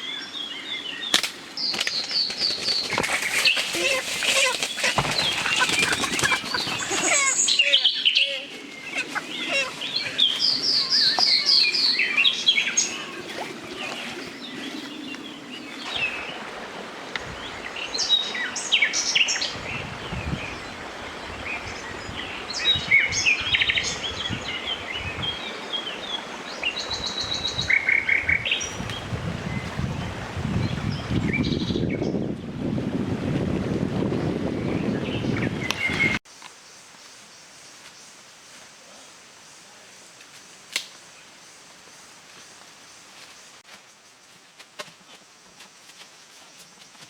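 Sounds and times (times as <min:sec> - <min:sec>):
birds chirping and trilling: 0:00.0 - 0:32.4, 0:34.2 - 0:38.2.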